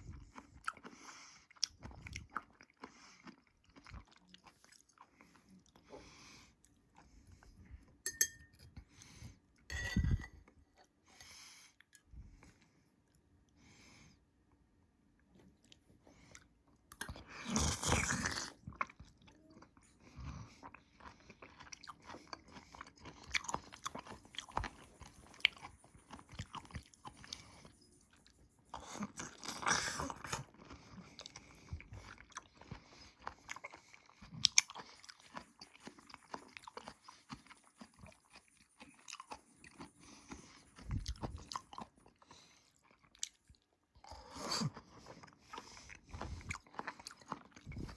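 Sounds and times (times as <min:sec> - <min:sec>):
person chewing: 0:00.0 - 0:06.0, 0:15.6 - 0:47.9.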